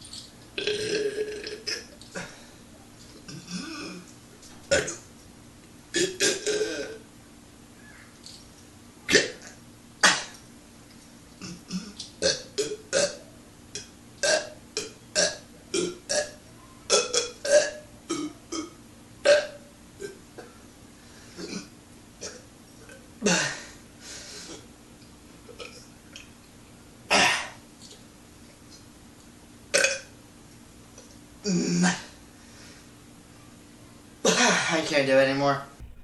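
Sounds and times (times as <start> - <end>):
man burping: 0.6 - 2.4, 3.3 - 4.1, 4.7 - 5.0, 5.9 - 7.0, 9.1 - 10.4, 11.4 - 13.2, 13.8 - 20.5, 21.4 - 23.8, 25.5 - 25.9, 27.1 - 27.6, 29.7 - 30.1, 31.4 - 32.2.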